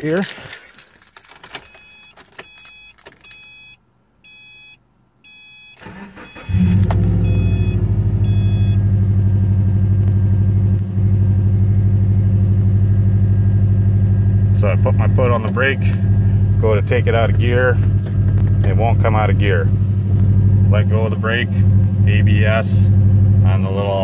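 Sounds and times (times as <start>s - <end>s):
dashboard warning chime: 1.4s - 8.9s
car engine idling: 5.8s - 24.0s.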